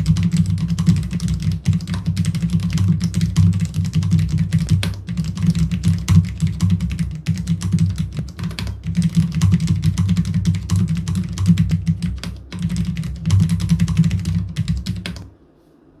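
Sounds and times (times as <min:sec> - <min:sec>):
fast keyboard typing: 0:00.0 - 0:15.3.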